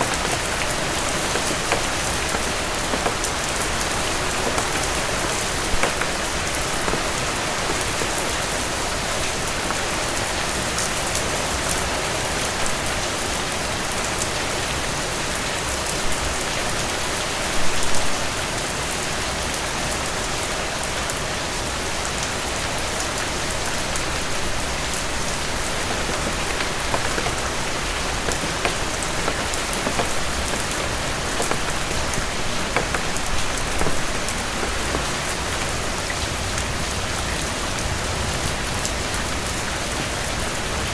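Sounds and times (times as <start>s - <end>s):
heavy rain falling: 0.0s - 11.7s, 23.0s - 40.9s
raindrops ticking on a surface: 0.0s - 13.0s, 23.5s - 40.9s.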